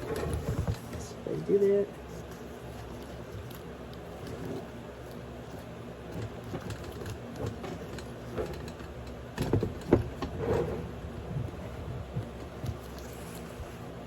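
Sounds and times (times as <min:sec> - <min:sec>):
webbing straps rustling and clicking: 0:02.0 - 0:09.2
kit knocking and rattling: 0:06.1 - 0:12.8.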